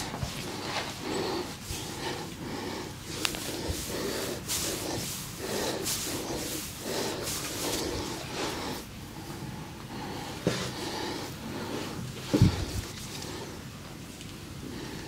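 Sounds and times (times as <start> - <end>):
hands rubbing skin in massage: 0.0 - 8.8.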